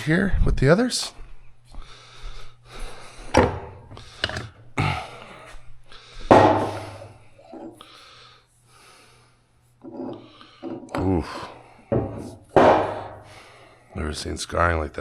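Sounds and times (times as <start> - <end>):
steady low hum: 0.0 - 15.0
tools knocking on workbench: 3.3 - 4.4, 6.3 - 7.0, 11.9 - 13.3.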